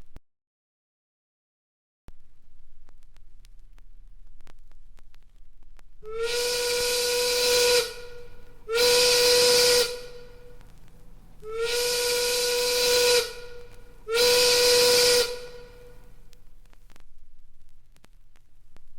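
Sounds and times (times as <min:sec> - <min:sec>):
steam whistle blasts: 0:06.0 - 0:10.6, 0:11.4 - 0:16.1.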